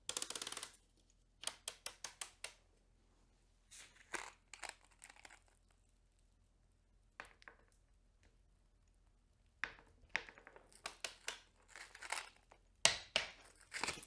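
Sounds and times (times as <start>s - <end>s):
torque wrench ratchet clicking: 0.1s - 0.7s.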